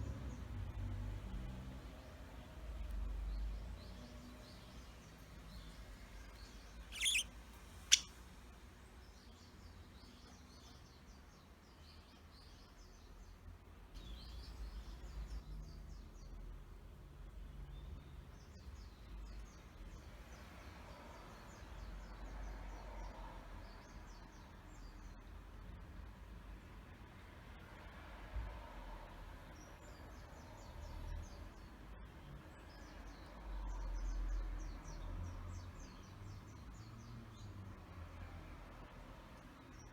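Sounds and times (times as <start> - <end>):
budgerigars chirping: 6.9 - 7.3
loud bird call: 7.0 - 7.2.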